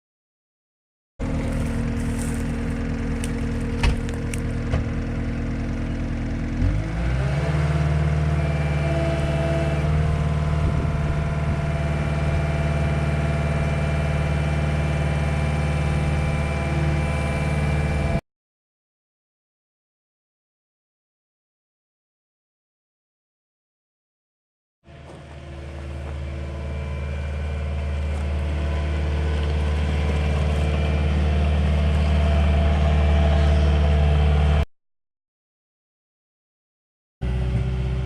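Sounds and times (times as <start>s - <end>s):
diesel engine running: 1.2s - 18.2s, 24.9s - 34.7s, 37.2s - 38.0s.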